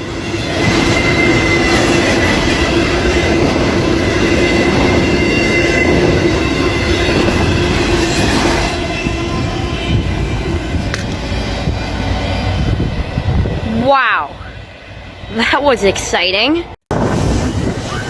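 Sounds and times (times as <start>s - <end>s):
train wheels rumbling on rail: 0.0s - 18.0s.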